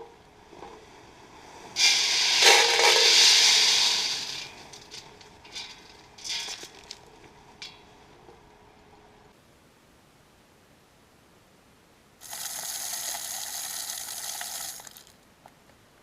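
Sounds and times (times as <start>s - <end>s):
corn kernels spraying out: 1.8s - 7.0s, 12.2s - 15.1s.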